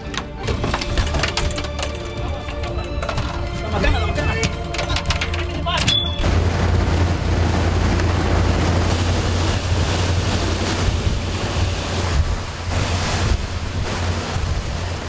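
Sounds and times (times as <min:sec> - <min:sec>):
rushing sea water: 0:00.0 - 0:15.0
wind buffeting microphone: 0:00.6 - 0:15.0
steady low rumble: 0:06.2 - 0:15.0.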